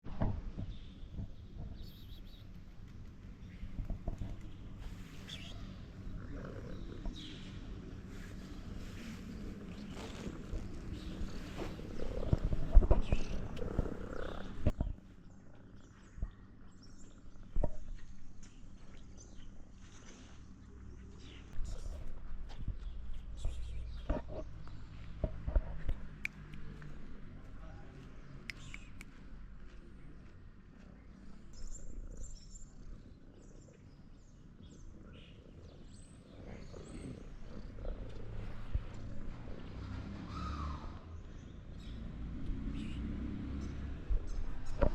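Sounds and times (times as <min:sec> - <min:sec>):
cat purring: 0:05.9 - 0:14.8, 0:34.8 - 0:39.9.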